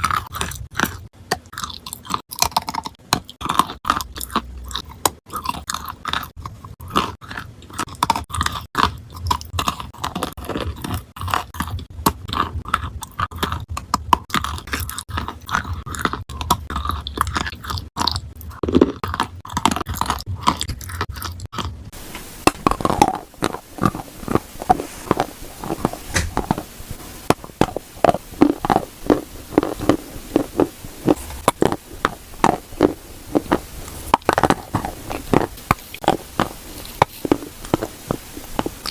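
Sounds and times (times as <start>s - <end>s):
crunchy chewing of clay: 0.0s - 38.9s.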